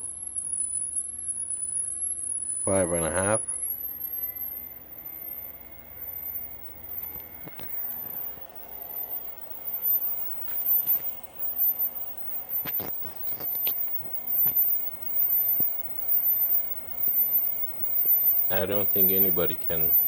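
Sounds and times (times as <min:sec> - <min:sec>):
high-pitched warbling tone: 0:02.6 - 0:20.0.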